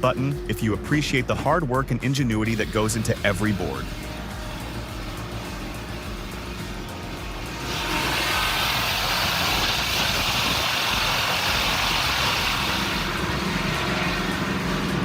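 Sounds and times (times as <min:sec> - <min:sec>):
sawmill machinery hissing: 0:00.0 - 0:15.0.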